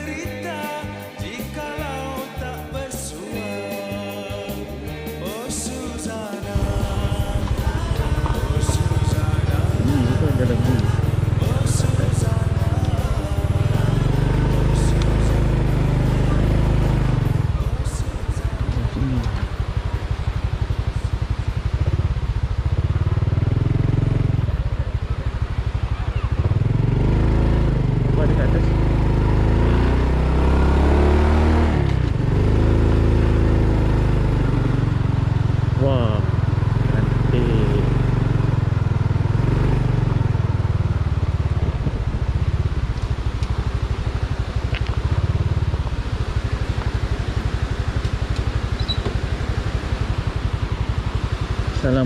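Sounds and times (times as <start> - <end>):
motorcycle engine running: 4.4 - 52.0.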